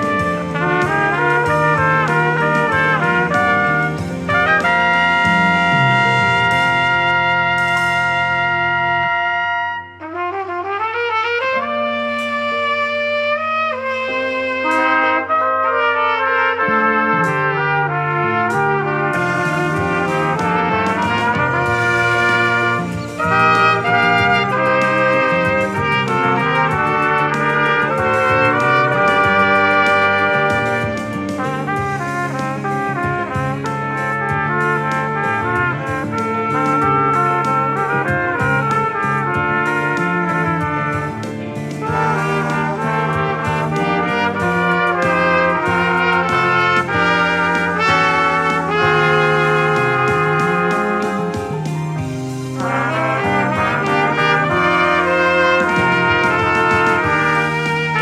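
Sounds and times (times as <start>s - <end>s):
trumpets playing in harmony: 0.0s - 58.0s.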